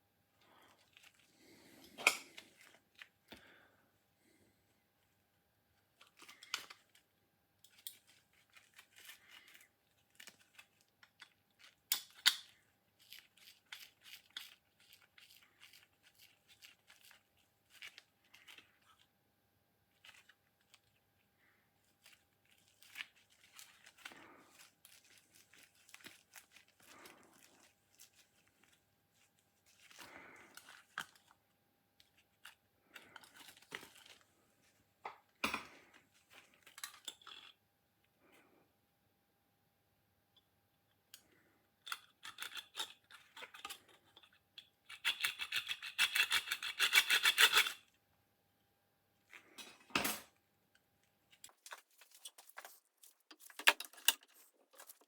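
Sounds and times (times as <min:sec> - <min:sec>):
scrapes and clicks on metal parts: 0:51.4 - 0:55.0.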